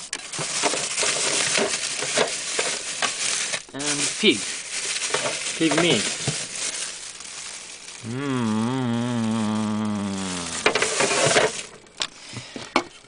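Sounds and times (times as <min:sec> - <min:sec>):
rustling handling noise: 0:00.0 - 0:11.9
person humming: 0:08.0 - 0:10.9.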